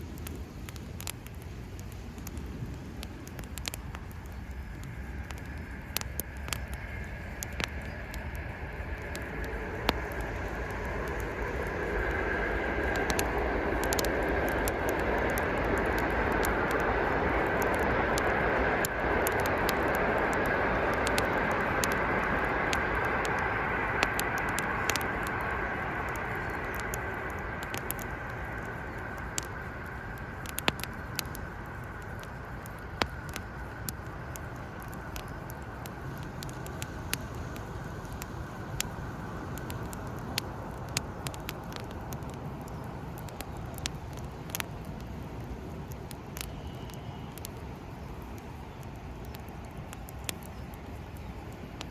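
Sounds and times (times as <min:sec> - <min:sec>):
campfire crackling and popping: 0:00.0 - 0:51.9
steady fire hiss: 0:00.0 - 0:51.9.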